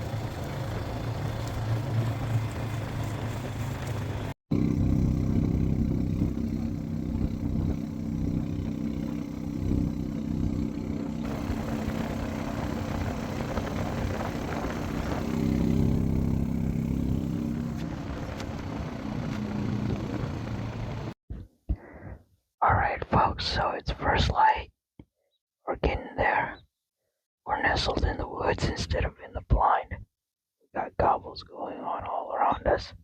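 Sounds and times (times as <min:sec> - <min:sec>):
vehicle engine running: 0:00.0 - 0:21.2.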